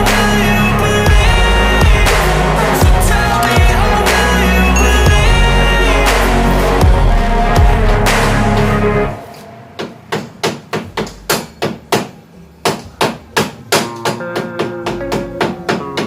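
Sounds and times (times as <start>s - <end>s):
background music: 0.0s - 16.0s
guitar notes: 13.9s - 16.0s.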